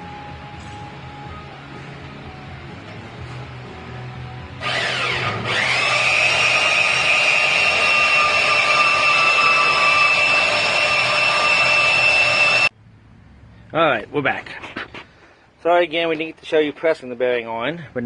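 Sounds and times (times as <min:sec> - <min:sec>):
power tool whining: 0:04.6 - 0:12.7.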